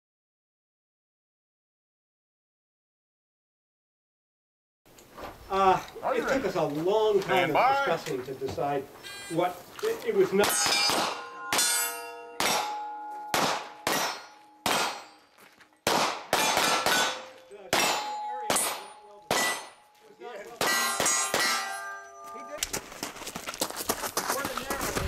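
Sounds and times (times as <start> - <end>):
steel target clanging: 10.2 - 22.6
gunshots: 10.4 - 11.8, 12.4 - 15.2, 15.8 - 19.8, 20.6 - 21.8.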